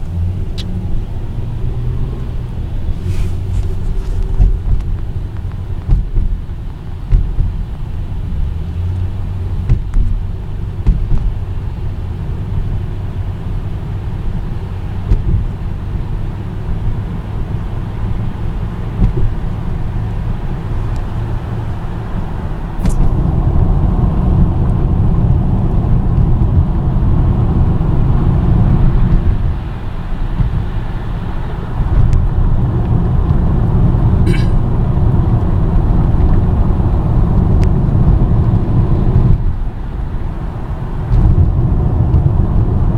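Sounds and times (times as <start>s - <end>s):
tyres and engine rumble: 0.0s - 42.9s
sharp click: 22.8s - 23.1s.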